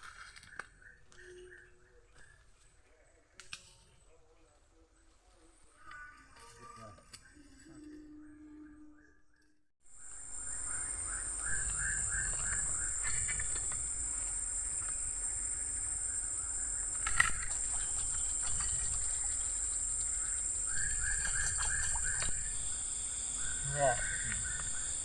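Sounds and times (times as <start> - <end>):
insects droning: 9.9 - 25.0
quick chirping animal calls: 20.6 - 22.6.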